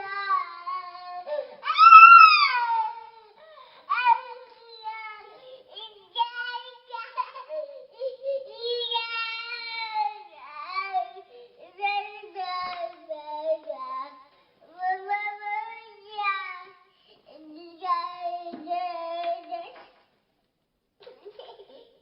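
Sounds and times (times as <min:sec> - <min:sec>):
small boy wailing: 0:00.0 - 0:05.4
boy sobbing: 0:00.0 - 0:12.6, 0:21.0 - 0:22.0.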